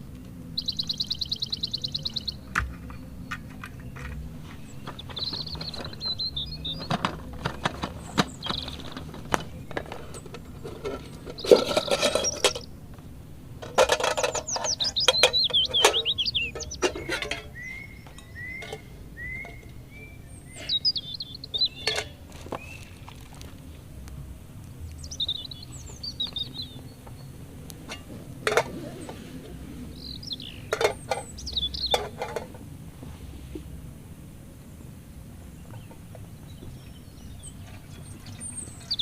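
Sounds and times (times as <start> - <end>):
birds chirping: 0.0 - 39.0
whistled bird notes: 0.6 - 2.5, 14.1 - 23.0
loud noisy rustle: 27.5 - 30.8.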